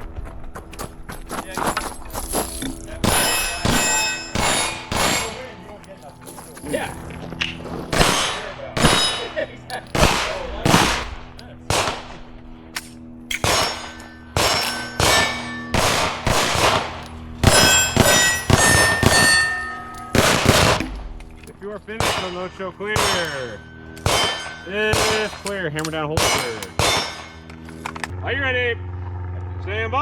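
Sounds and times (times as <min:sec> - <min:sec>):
bullets clanging on steel plates: 0:01.6 - 0:12.2, 0:12.8 - 0:28.1
pistol shots: 0:03.0 - 0:05.7, 0:07.9 - 0:27.6.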